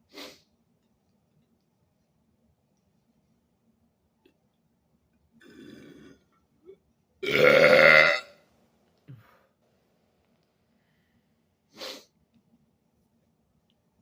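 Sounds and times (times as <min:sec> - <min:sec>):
man burping: 0:05.4 - 0:06.2, 0:07.2 - 0:08.4
breathy puff: 0:11.7 - 0:12.1.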